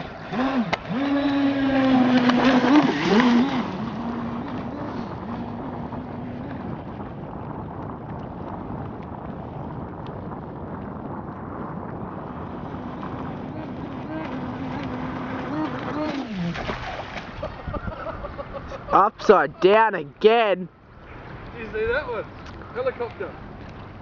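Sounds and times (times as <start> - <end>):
electric motor whining: 0.2 - 6.7, 12.6 - 16.6.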